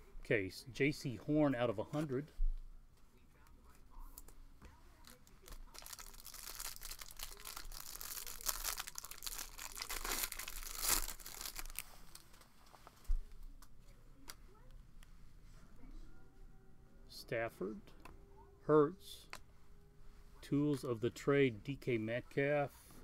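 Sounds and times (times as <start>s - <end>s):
wrapper tearing and crinkling: 5.0s - 12.4s.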